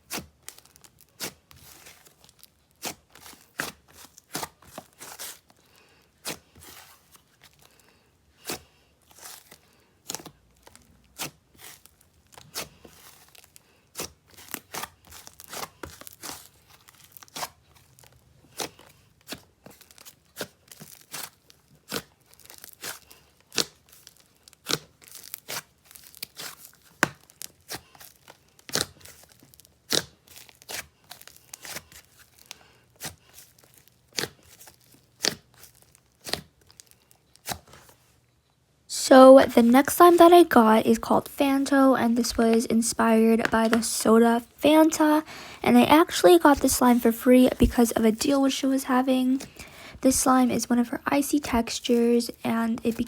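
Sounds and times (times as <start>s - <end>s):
slime crackling and popping: 0.0s - 5.5s, 8.4s - 37.8s.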